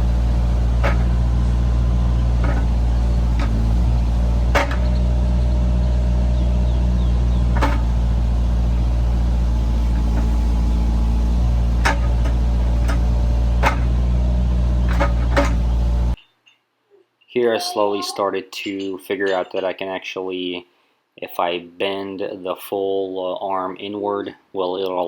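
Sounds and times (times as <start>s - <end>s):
diesel engine running: 0.0s - 16.2s
excavator bucket knocks: 0.1s - 5.4s, 7.4s - 8.5s, 11.8s - 14.2s.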